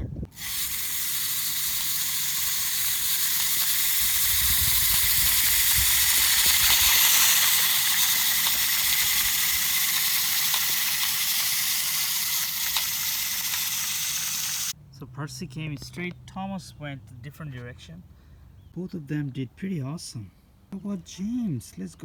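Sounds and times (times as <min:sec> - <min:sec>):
loud steady hiss: 0:00.3 - 0:14.8.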